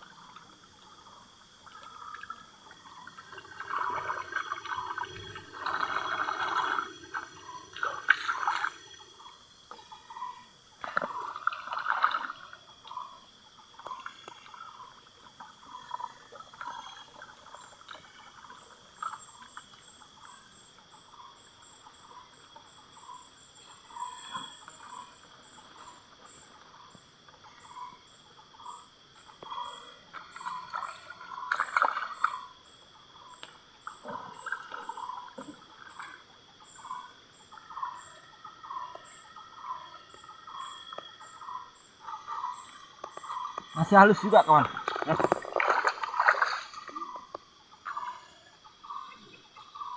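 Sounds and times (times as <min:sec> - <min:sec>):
insects chirring: 0:00.0 - 0:49.9
water sloshing in a pan: 0:01.6 - 0:09.0, 0:30.1 - 0:32.5, 0:42.2 - 0:47.2.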